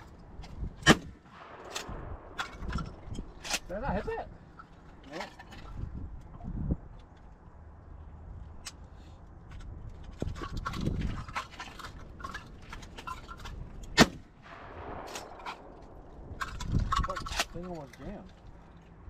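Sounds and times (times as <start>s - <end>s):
low wind rumble: 0.0s - 19.0s
shotgun shot with echo: 14.0s - 16.0s.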